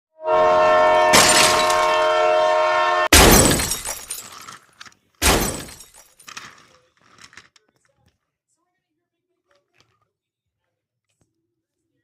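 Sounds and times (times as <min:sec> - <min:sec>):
train horn chord: 0:00.1 - 0:03.1
crash with shattering: 0:01.1 - 0:02.0, 0:03.1 - 0:06.2.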